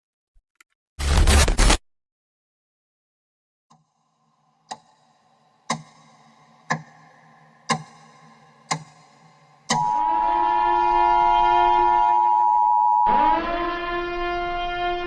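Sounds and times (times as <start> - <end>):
clock ticking: 4.7 - 10.0
faint ringing tone: 9.8 - 13.1.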